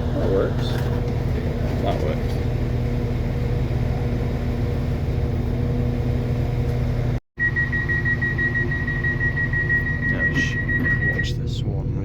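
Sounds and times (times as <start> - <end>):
high-pitched whine: 7.4 - 11.6.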